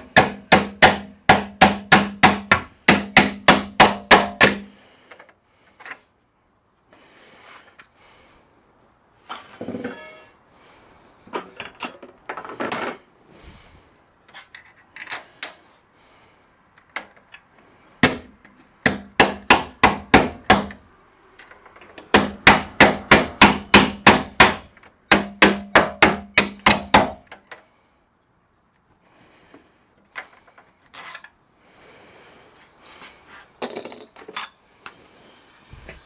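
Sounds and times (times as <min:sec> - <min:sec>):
hammer striking metal: 0:00.0 - 0:04.6, 0:22.1 - 0:27.2
metal scraping: 0:09.3 - 0:10.4.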